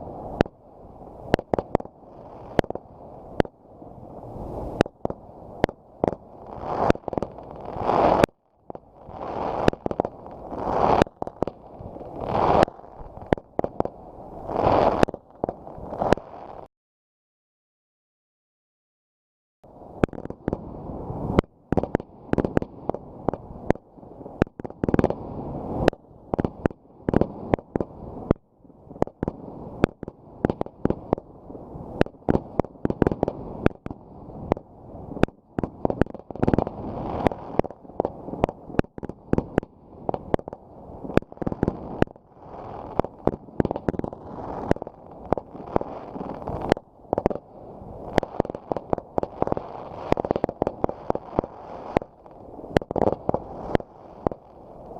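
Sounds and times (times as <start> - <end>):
fireworks bangs: 4.7 - 16.7, 32.0 - 54.9.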